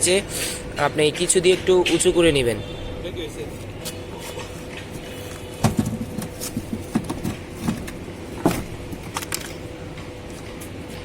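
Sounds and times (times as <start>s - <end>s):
knocks and clunks of handling: 4.4s - 10.5s.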